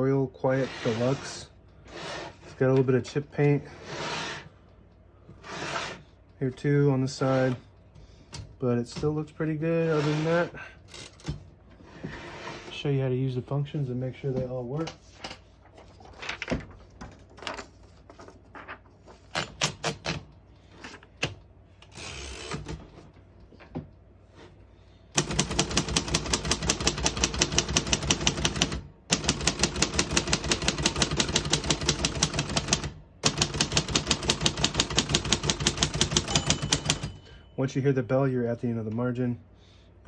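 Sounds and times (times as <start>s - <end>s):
typewriter key strikes: 25.2s - 37.2s.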